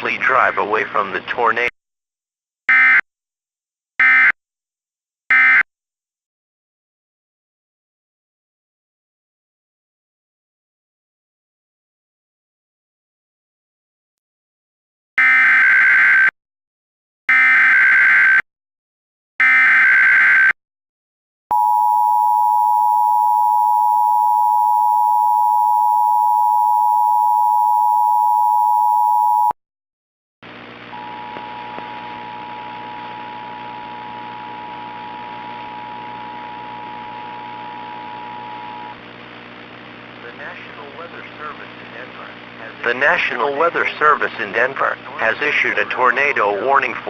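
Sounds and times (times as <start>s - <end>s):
two-pitch attention tone: 21.5s - 29.5s
electrical hum with hiss: 30.6s - 47.0s.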